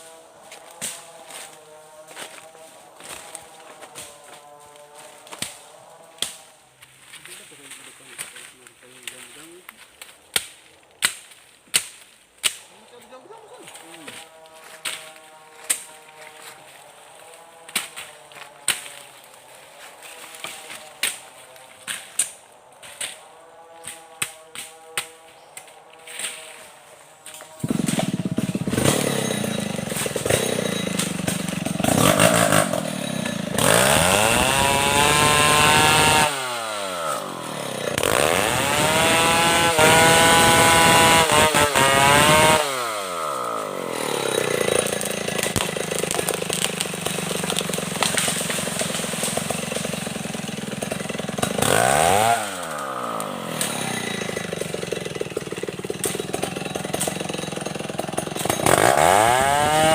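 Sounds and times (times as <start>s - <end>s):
chainsaw engine revving: 12.6s - 59.9s.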